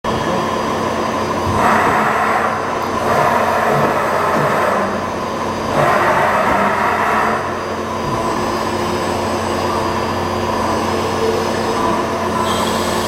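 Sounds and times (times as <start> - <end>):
milling machine running: 0.1 - 13.0.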